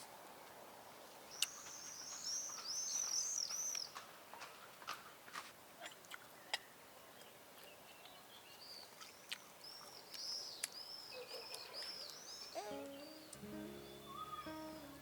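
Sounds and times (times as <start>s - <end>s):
birds chirping: 1.3s - 4.0s, 6.4s - 15.0s.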